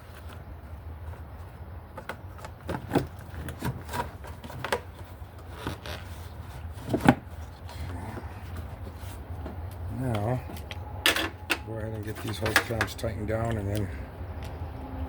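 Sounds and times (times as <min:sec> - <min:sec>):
steady low hum: 0:06.2 - 0:15.0.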